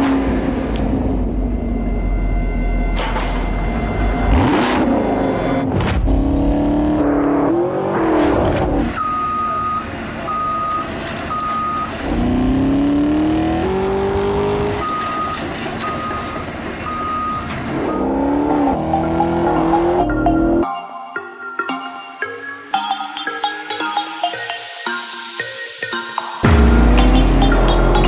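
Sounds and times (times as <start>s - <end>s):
car engine revving: 0.0s - 20.6s, 26.4s - 28.0s.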